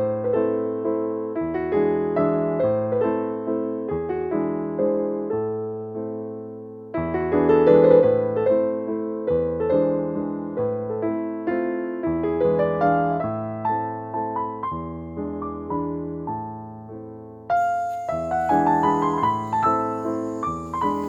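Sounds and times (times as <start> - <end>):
electric piano slow melody: 0.0 - 21.0
faint hiss with high tone: 17.6 - 21.0.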